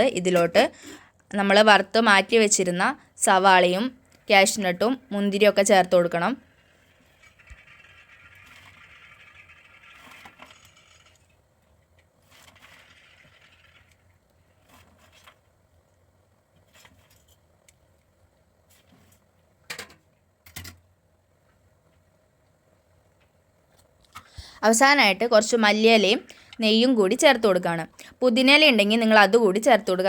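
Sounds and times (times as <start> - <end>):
spoon scraping and rustling: 6.8 - 11.4, 12.2 - 15.5.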